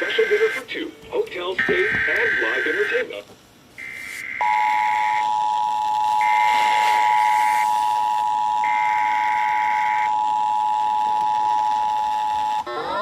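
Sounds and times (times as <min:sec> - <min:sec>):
two-tone attention signal: 0:01.6 - 0:02.9
digital data tone bursts: 0:01.6 - 0:03.1.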